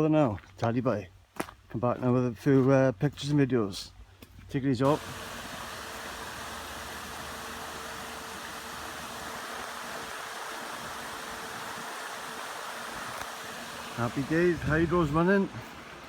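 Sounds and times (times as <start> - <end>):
faint steady hum: 4.9 - 16.0
stream water rushing: 4.9 - 16.0.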